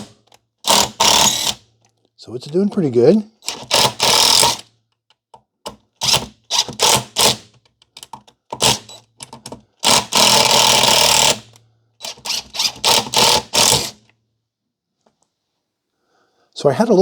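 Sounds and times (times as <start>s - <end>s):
impact driver driving screws: 0.0s - 1.6s, 3.4s - 4.7s, 6.0s - 14.1s.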